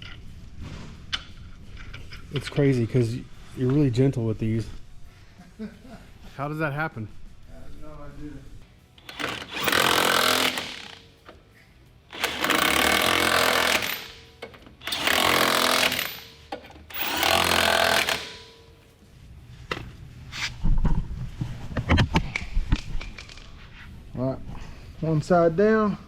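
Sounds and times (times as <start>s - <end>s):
impact wrench hammering: 9.0s - 11.1s, 12.1s - 18.6s.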